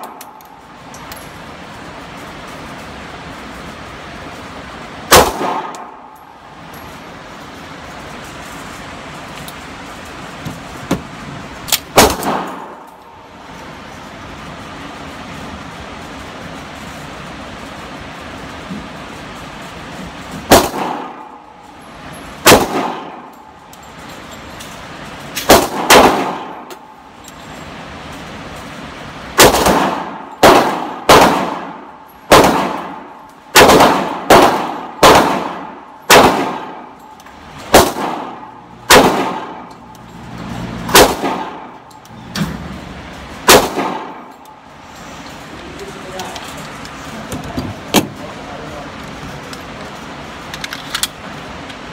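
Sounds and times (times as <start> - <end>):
handgun shots echoing: 5.1 - 6.2, 11.7 - 13.0, 20.5 - 21.4, 22.4 - 23.5, 25.4 - 26.9, 29.4 - 40.0, 40.9 - 42.5, 43.5 - 44.5.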